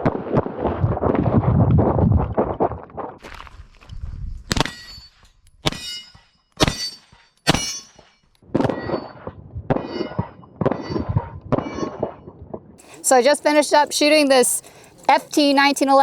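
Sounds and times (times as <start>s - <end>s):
pistol shots: 6.6s - 12.2s.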